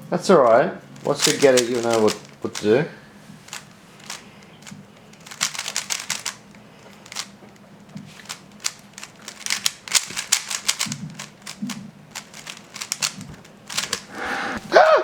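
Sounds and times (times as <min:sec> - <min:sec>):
puzzle cube layers clicking: 0:01.0 - 0:02.8, 0:03.5 - 0:07.4, 0:08.1 - 0:14.3.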